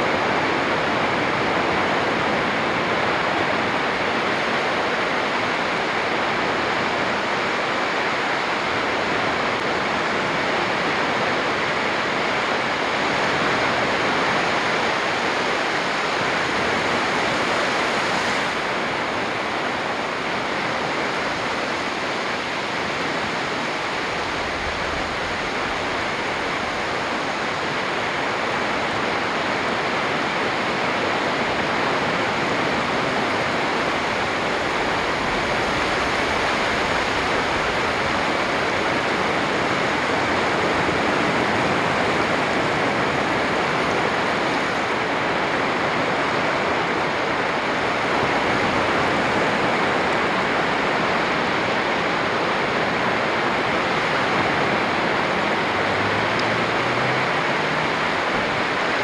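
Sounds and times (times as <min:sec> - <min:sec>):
waves breaking on beach: 0:00.0 - 0:59.0.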